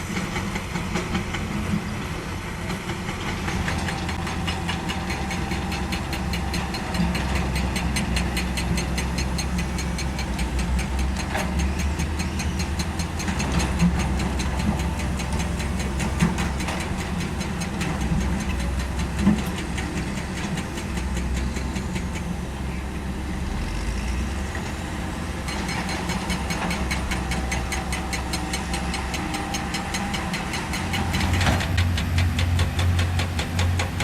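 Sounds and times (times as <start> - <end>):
diesel engine running: 0.0 - 34.0
rapid even ticking: 4.9 - 22.3.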